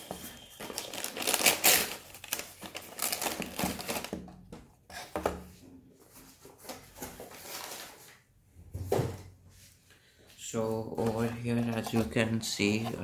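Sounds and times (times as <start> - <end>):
packaging rustling: 0.0 - 4.2, 6.3 - 8.2.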